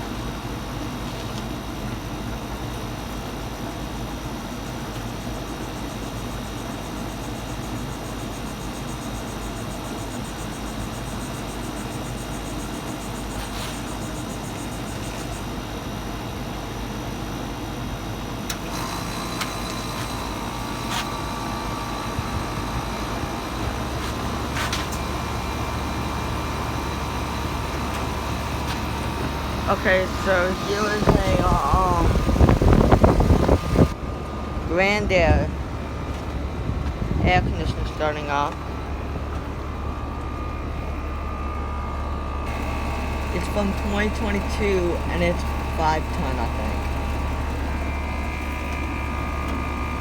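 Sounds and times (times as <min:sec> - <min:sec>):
air conditioner humming: 0:00.0 - 0:50.0
whine: 0:18.5 - 0:42.7.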